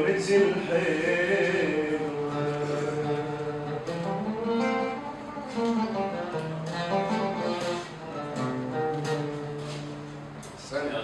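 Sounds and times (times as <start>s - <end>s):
person singing: 0.0s - 4.0s
plucked string instrument melody: 0.0s - 10.6s.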